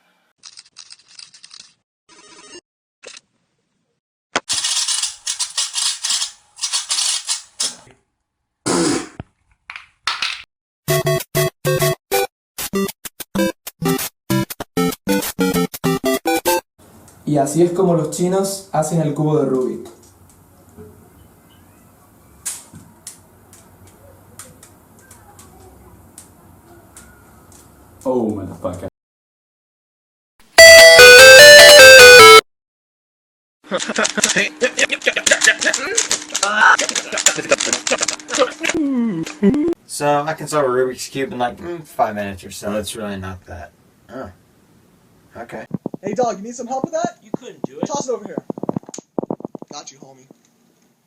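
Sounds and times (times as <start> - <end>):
puzzle cube plastic clacking: 9.7 - 10.4.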